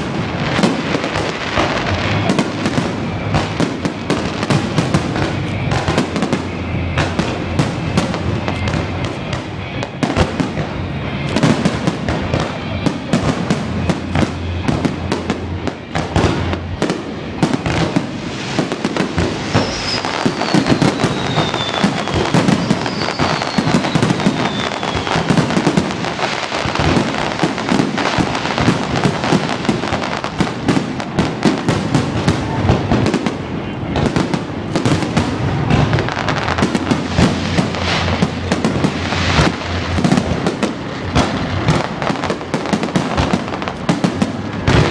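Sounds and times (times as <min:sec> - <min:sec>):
falling firework whistles: 0:00.0 - 0:33.3
fireworks bangs and crackling: 0:00.0 - 0:44.9.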